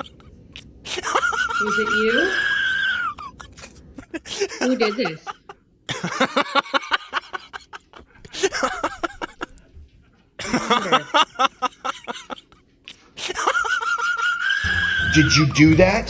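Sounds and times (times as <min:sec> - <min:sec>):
person laughing: 0:00.9 - 0:09.6, 0:10.4 - 0:15.5
high held tone: 0:14.6 - 0:16.0.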